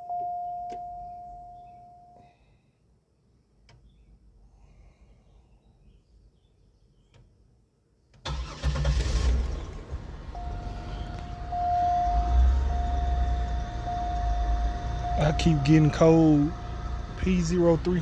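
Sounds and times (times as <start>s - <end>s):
car engine starting and running: 8.2s - 18.0s.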